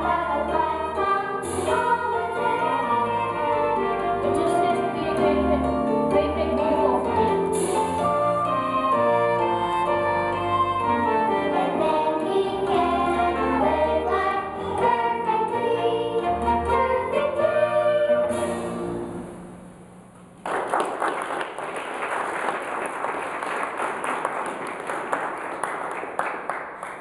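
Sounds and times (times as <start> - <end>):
singing with instrumental backing: 0.0 - 19.0
audience applause: 20.4 - 27.0.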